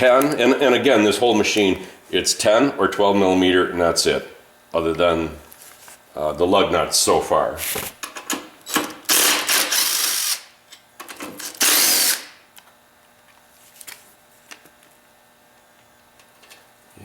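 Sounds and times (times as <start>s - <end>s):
power tool spinning out bolts: 9.1s - 10.5s, 11.4s - 12.4s.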